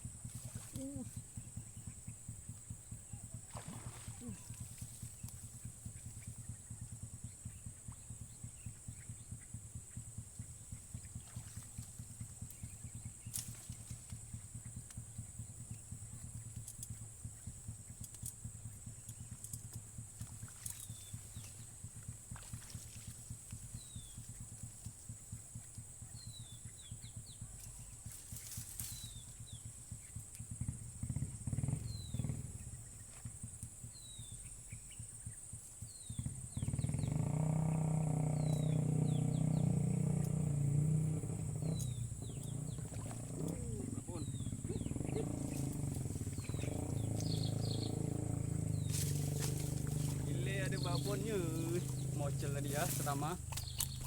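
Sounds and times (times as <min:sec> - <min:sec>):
low fast pulsing: 0:29.2 - 0:54.0
bird chirps: 0:33.9 - 0:40.5, 0:41.2 - 0:54.0
high-pitched insect drone: 0:35.9 - 0:54.0
low rumble: 0:36.4 - 0:54.0.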